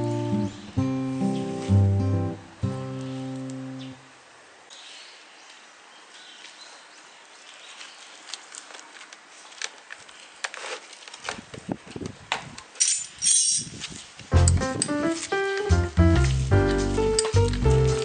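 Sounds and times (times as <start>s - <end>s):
objects clicking and knocking: 12.3s - 18.0s.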